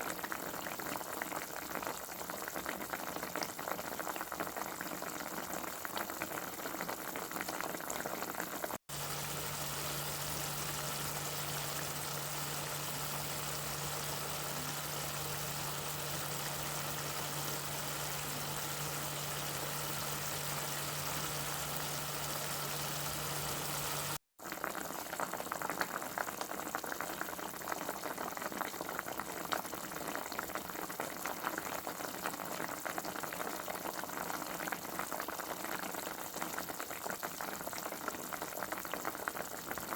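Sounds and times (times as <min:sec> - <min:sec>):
liquid boiling in a pot: 0:00.0 - 0:39.9
steady low hum: 0:08.9 - 0:24.2.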